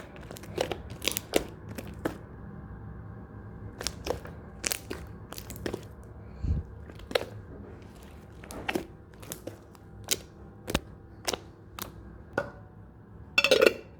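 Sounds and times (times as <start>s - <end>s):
slime squished by hand popping: 0.0s - 2.2s.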